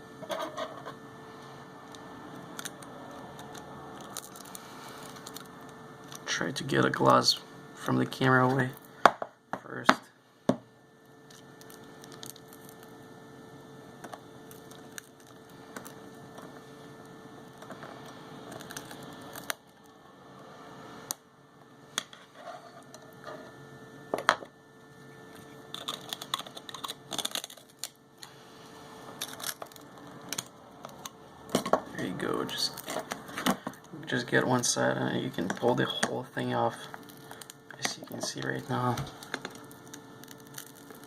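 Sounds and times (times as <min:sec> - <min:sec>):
pry tool scraping and crackling: 0:25.3 - 0:28.3, 0:29.2 - 0:31.8, 0:32.7 - 0:33.8.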